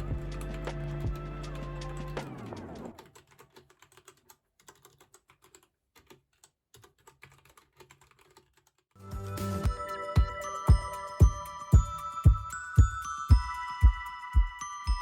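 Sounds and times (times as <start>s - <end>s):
background music: 0.0s - 2.9s, 9.0s - 15.0s
music with chiming tones: 9.0s - 15.0s.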